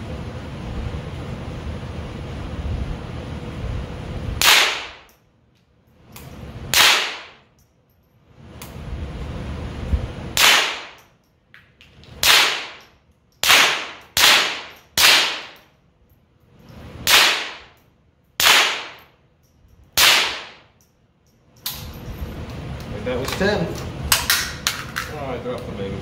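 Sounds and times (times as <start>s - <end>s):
suppressed rifle shots: 4.4s - 5.1s, 6.7s - 7.4s, 10.4s - 11.0s, 12.2s - 12.8s, 13.4s - 15.6s, 17.0s - 17.7s, 18.4s - 19.0s, 20.0s - 20.6s.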